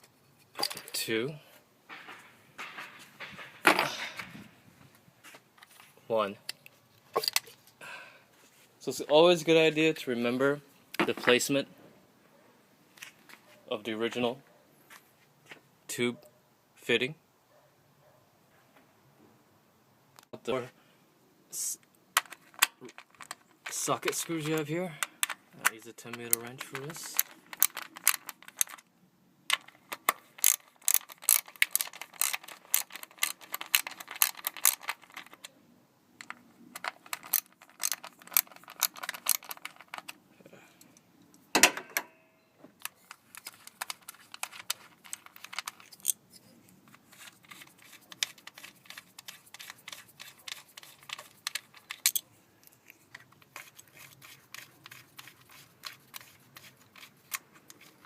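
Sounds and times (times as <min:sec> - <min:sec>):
ratchet wrench clicking: 0:30.4 - 0:34.9.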